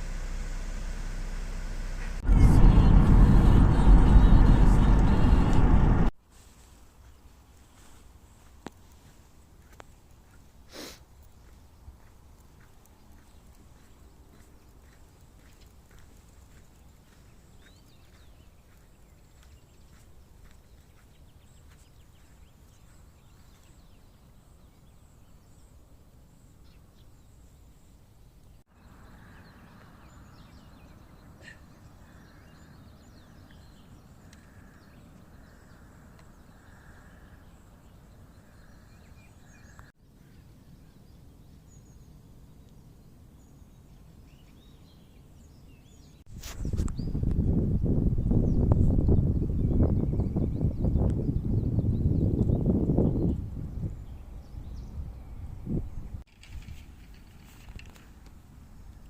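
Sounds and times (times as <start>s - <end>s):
loud low rumble: 0.0s - 6.1s
outdoor background noise: 0.0s - 59.0s.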